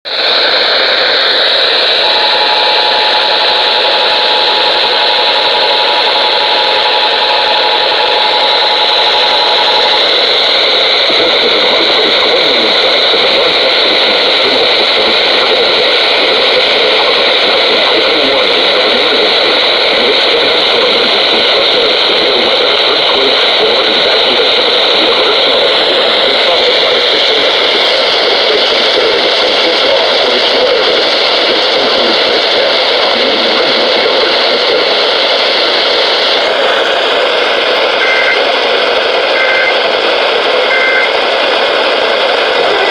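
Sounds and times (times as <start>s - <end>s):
radio static hiss: 0.1s - 42.9s
two-tone alert signal: 38.0s - 38.4s, 39.4s - 39.8s, 40.7s - 41.1s.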